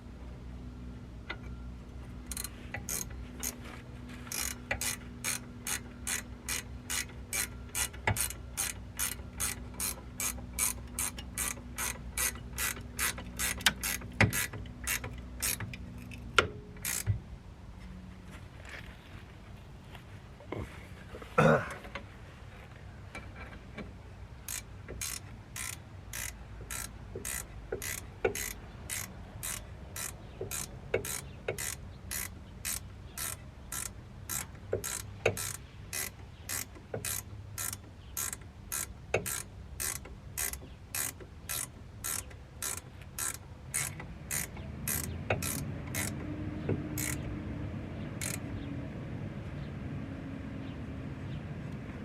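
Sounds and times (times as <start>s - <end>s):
ratchet wrench clicking: 2.2s - 3.6s, 4.3s - 17.2s, 24.4s - 46.2s, 47.0s - 47.3s, 48.2s - 48.5s.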